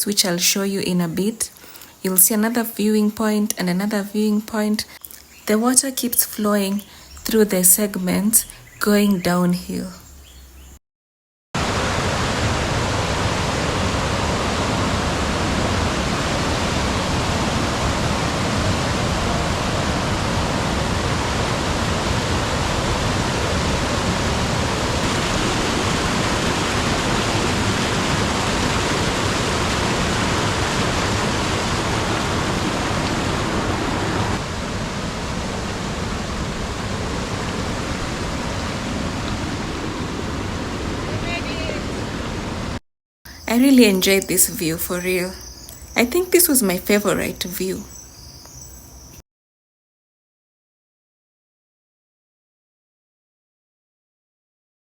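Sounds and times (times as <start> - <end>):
waterfall rushing: 11.6 - 42.8.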